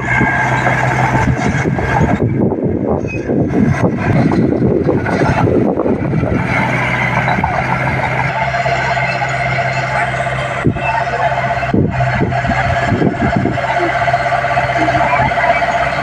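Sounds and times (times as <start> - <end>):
bulldozer diesel engine under load: 0.0 - 16.0.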